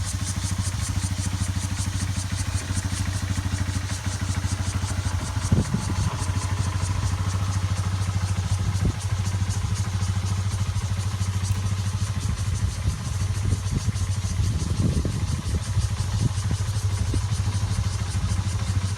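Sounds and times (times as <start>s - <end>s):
engine idling: 0.0s - 18.9s.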